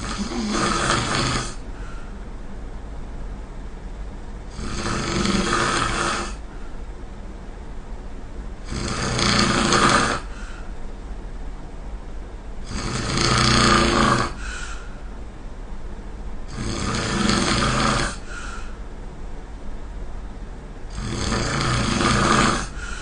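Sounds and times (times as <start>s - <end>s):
person snoring loudly: 0.0s - 1.6s, 4.5s - 6.4s, 8.6s - 10.6s, 12.6s - 14.9s, 16.5s - 18.8s, 20.9s - 23.0s
steady low hum: 0.0s - 23.0s.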